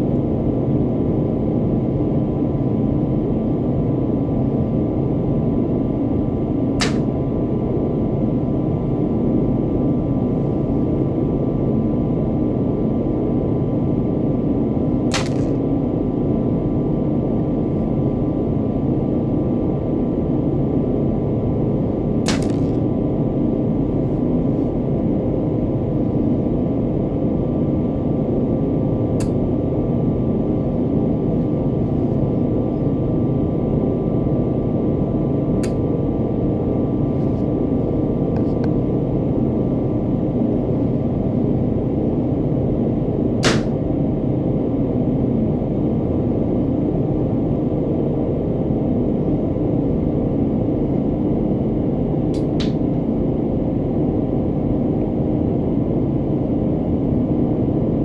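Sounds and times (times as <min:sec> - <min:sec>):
low background rumble: 0:00.0 - 0:58.0
spring pistol snapping shut: 0:06.8 - 0:07.1, 0:15.1 - 0:15.6, 0:22.3 - 0:22.8, 0:43.4 - 0:43.7.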